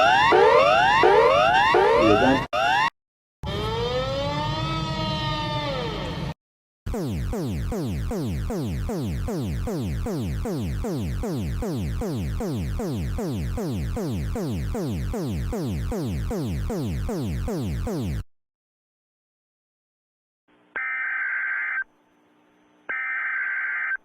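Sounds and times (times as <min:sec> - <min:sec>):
electronic alarm pitch sweeps: 0:00.0 - 0:02.9, 0:06.9 - 0:18.2.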